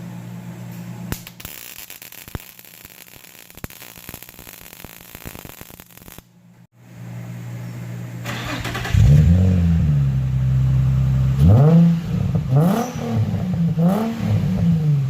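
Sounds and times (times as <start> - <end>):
welding arc crackling: 1.1 - 6.3.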